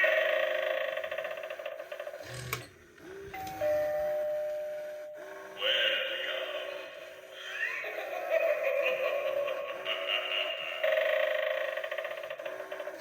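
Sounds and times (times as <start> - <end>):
ding-dong doorbell chime: 3.3 - 4.9.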